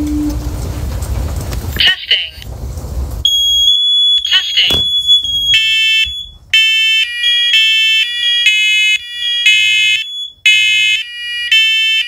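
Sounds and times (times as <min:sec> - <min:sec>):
piercing alarm beeps: 0:03.3 - 0:12.0.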